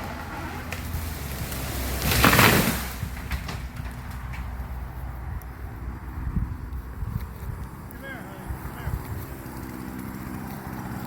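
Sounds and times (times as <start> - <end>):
branches breaking and swishing: 0.0 - 4.4
tree falling with a crash: 0.0 - 4.5.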